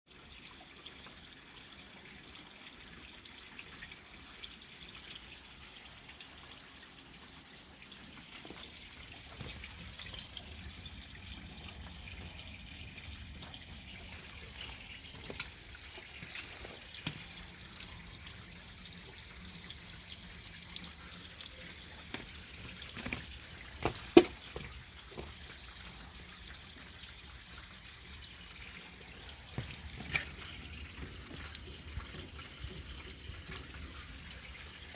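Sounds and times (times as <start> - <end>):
toilet flushing and refilling: 0.1 - 34.9.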